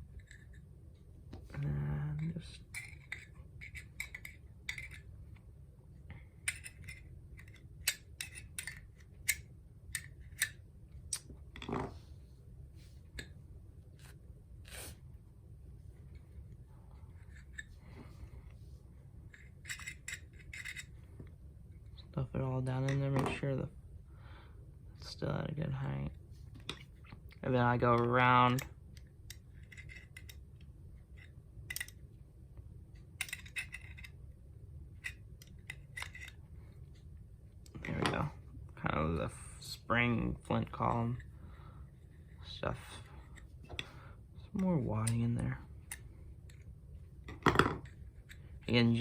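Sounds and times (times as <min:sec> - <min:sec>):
small clicks and scrapes: 0:00.0 - 0:01.6, 0:06.1 - 0:12.1, 0:16.0 - 0:18.6, 0:19.2 - 0:22.0, 0:28.5 - 0:32.0, 0:33.0 - 0:34.2, 0:35.0 - 0:38.3, 0:45.0 - 0:49.0.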